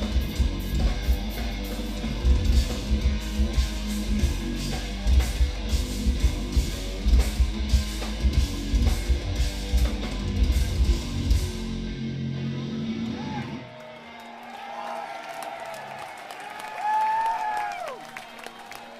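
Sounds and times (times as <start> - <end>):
metal band playing: 0.0 - 14.3.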